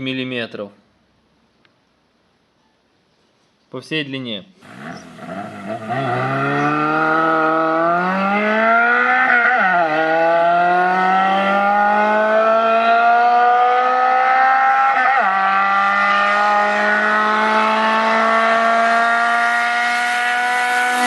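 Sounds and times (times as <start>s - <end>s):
car engine accelerating through gears: 4.6s - 21.0s.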